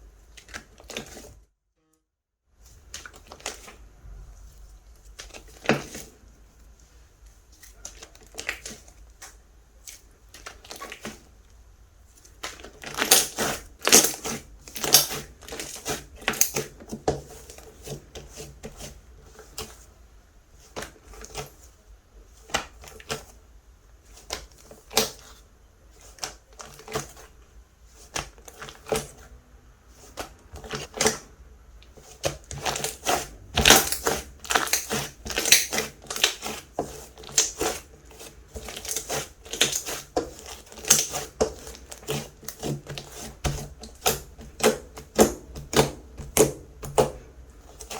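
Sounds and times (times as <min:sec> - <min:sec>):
slime squished crackling and popping: 0:12.4 - 0:16.7, 0:32.4 - 0:36.6, 0:37.2 - 0:37.8, 0:38.5 - 0:42.7.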